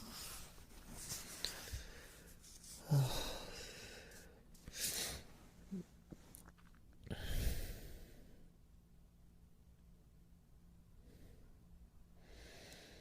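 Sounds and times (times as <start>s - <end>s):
man breathing: 0.0s - 5.8s, 7.1s - 8.5s, 12.2s - 13.0s
man sighing: 2.8s - 4.0s.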